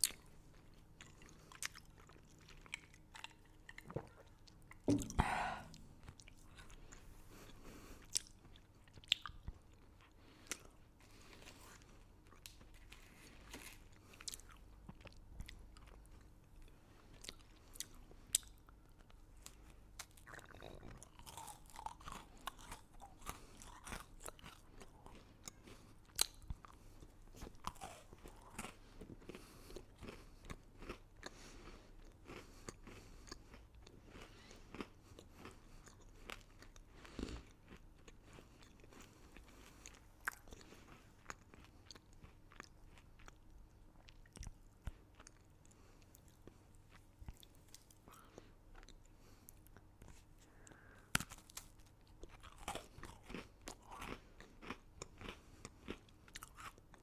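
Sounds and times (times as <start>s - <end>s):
person crunching candy: 19.6s - 44.3s, 50.9s - 57.0s.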